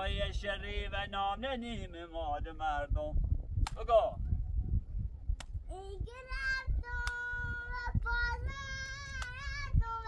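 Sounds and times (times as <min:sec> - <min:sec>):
child singing high notes: 0:05.7 - 0:10.0.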